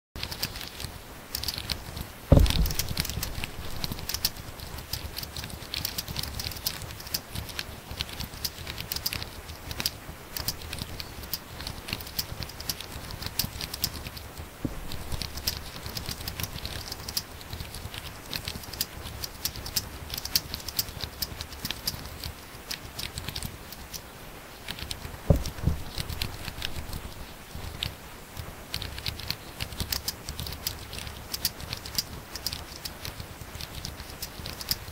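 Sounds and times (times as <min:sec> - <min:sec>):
loud thumps: 0:02.3 - 0:04.4, 0:14.6 - 0:15.4, 0:25.3 - 0:27.2
fast typing on laptop keyboard: 0:14.8 - 0:23.9, 0:28.7 - 0:34.9.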